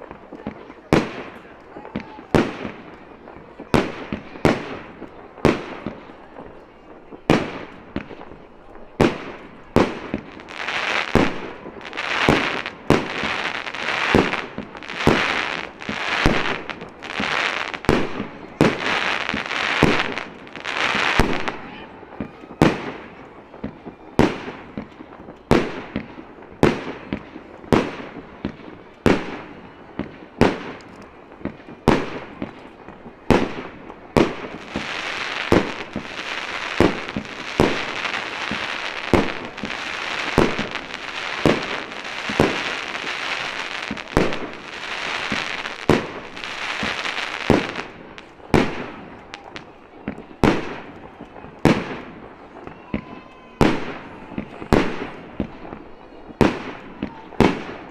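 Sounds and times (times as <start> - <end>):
firework shells bursting: 31.9 - 49.4
crackling hiss: 33.4 - 49.5.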